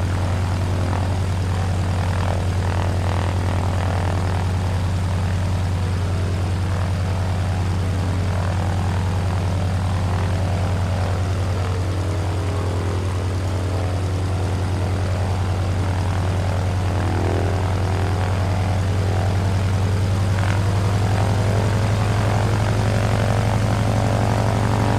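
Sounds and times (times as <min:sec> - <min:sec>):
helicopter engine drone: 0:00.0 - 0:24.9
helicopter rotor chopping: 0:00.0 - 0:24.9.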